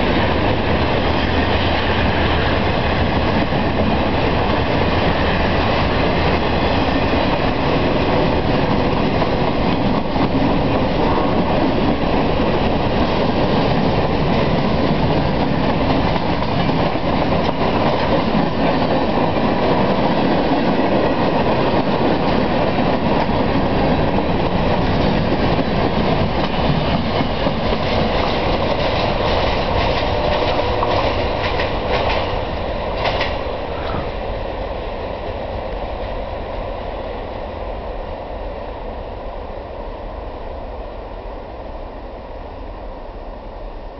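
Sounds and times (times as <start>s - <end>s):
freight train rumbling past: 0.0s - 43.9s
train wheels clicking over rail joints: 0.4s - 34.2s.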